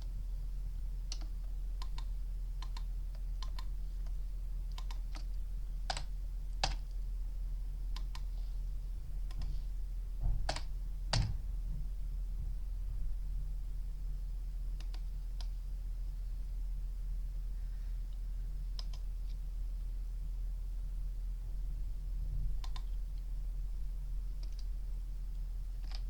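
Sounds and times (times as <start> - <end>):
low electrical hum: 0.0 - 26.0
mouse and keyboard clicks: 1.1 - 3.7, 18.8 - 19.4, 24.4 - 24.7, 25.8 - 26.0.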